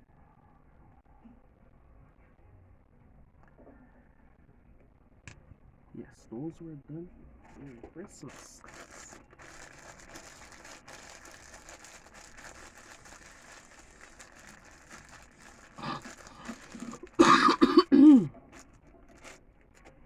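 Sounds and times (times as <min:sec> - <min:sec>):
person coughing: 0:15.8 - 0:18.3.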